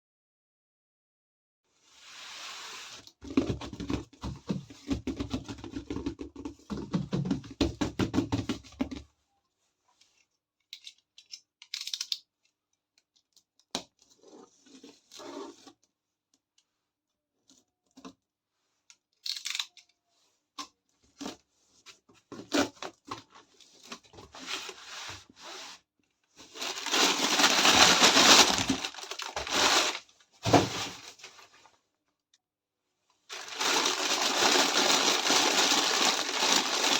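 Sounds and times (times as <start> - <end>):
small plastic pieces clicking: 10.8 - 12.2, 19.2 - 19.9
packaging rustling and tearing: 26.4 - 31.4, 33.3 - 36.9.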